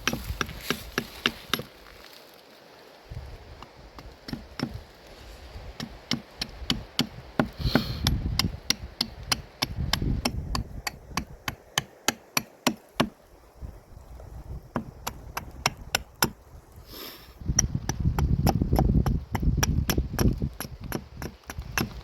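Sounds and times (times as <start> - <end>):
axe chopping wood: 0.0 - 1.7, 4.0 - 4.8, 5.8 - 13.2, 17.5 - 22.0.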